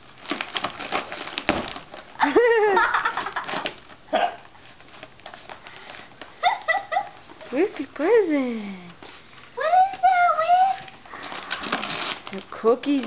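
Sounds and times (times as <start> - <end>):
cardboard ripping and crackling: 0.0 - 4.0, 10.2 - 13.0.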